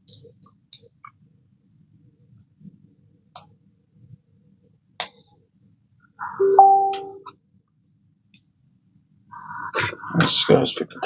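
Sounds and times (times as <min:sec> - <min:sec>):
steady pitched tone: 0:06.4 - 0:07.3.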